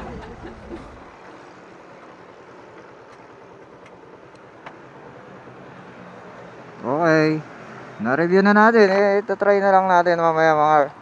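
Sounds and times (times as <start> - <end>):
low wind rumble on microphone: 0.0 - 2.8
motorcycle road noise: 0.0 - 11.0.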